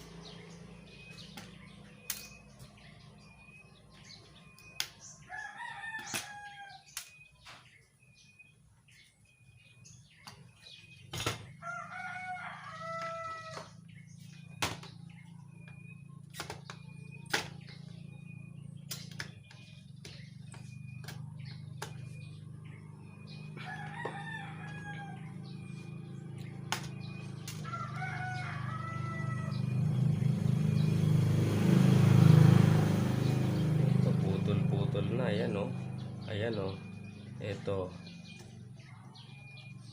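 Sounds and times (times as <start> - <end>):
rooster crowing: 5.2 - 6.9, 11.6 - 13.8, 23.5 - 26.0, 27.0 - 30.0.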